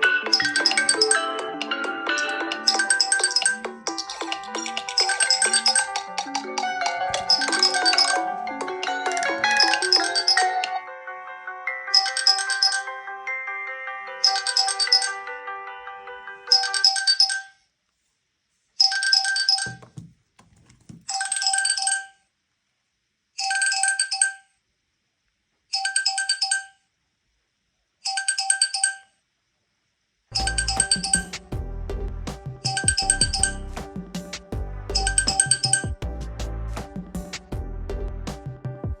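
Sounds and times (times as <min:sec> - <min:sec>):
bell-like phone ring: 0:00.0 - 0:17.6, 0:18.8 - 0:19.8, 0:23.4 - 0:24.5, 0:25.8 - 0:26.8, 0:28.1 - 0:29.1, 0:30.3 - 0:31.4, 0:32.6 - 0:33.6, 0:35.0 - 0:35.9
melodic smartphone ringtone: 0:00.0 - 0:17.6, 0:30.4 - 0:31.4, 0:32.6 - 0:34.0, 0:34.9 - 0:36.0.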